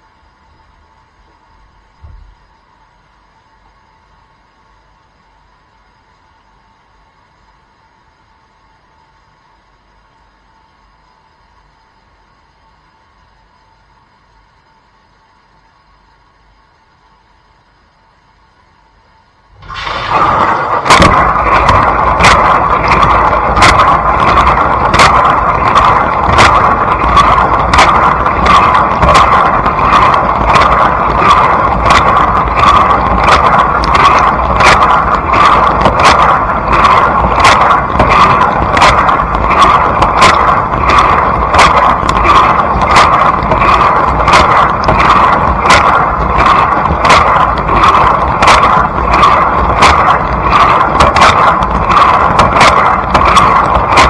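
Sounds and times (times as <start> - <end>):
dishwasher water spraying: 19.6 - 37.8.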